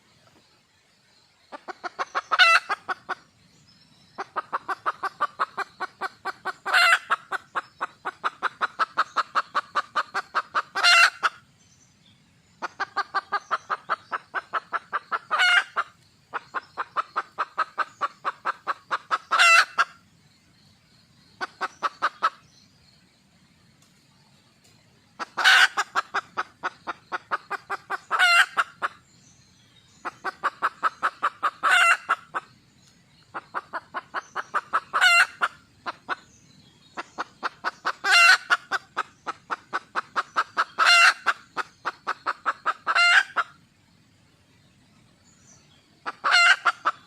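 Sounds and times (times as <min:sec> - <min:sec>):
hen clucking and squawking: 0:01.5 - 0:03.3, 0:04.2 - 0:11.5, 0:12.6 - 0:20.0, 0:21.4 - 0:22.4, 0:25.2 - 0:29.0, 0:30.0 - 0:32.5, 0:33.3 - 0:36.3, 0:37.0 - 0:43.6, 0:46.0 - 0:47.0.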